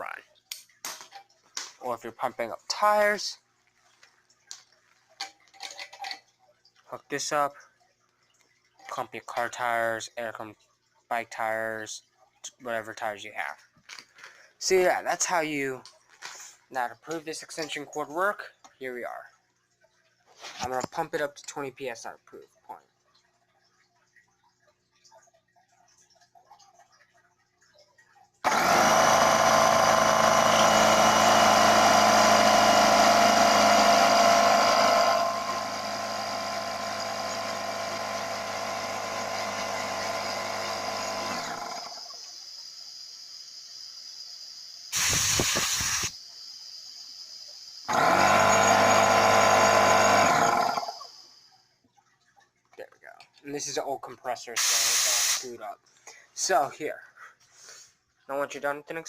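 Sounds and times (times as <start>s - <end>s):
air compressor humming: 28.4s - 42.1s, 44.9s - 46.2s, 47.9s - 51.2s, 54.6s - 55.4s
short noisy burst: 44.9s - 46.2s, 54.6s - 55.5s.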